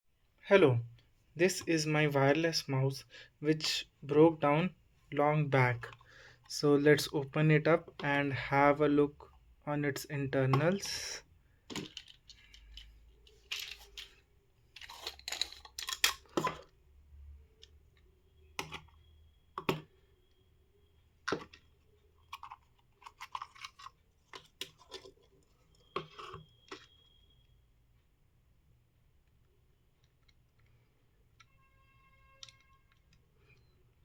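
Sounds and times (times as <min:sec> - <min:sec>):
plastic parts scraping: 0:10.0 - 0:16.8, 0:21.3 - 0:27.0.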